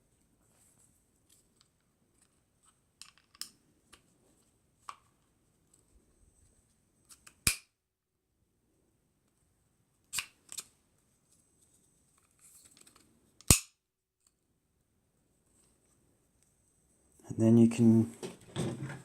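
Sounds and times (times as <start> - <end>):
gun parts clicking together: 3.0 - 3.6.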